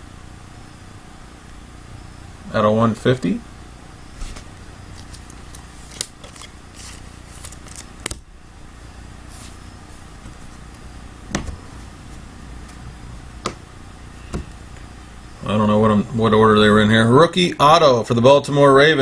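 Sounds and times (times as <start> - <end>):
low steady hum: 0.0 - 19.0
cards and packaging rustling: 4.2 - 8.3, 9.3 - 12.2.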